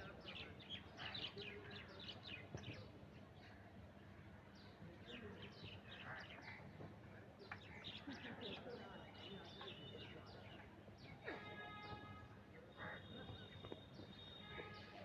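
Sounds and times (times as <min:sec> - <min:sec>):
birds chirping: 0:07.4 - 0:15.0.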